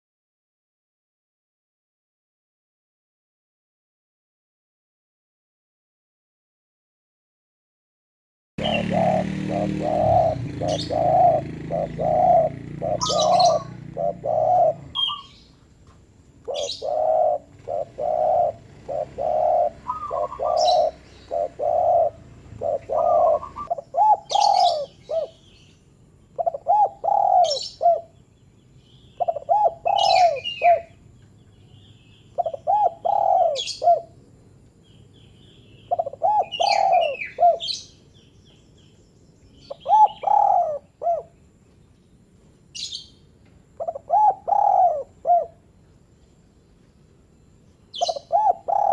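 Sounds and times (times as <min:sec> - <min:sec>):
dove cooing: 0:08.6 - 0:15.4, 0:16.4 - 0:25.5, 0:26.3 - 0:28.2, 0:29.2 - 0:31.0, 0:32.4 - 0:34.2, 0:35.9 - 0:37.9, 0:39.7 - 0:41.4, 0:43.8 - 0:45.7, 0:48.0 - 0:48.9.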